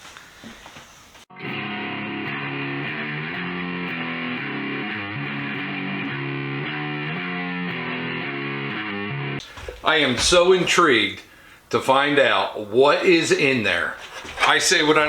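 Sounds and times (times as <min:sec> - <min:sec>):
distorted electric guitar music: 0:01.3 - 0:09.4.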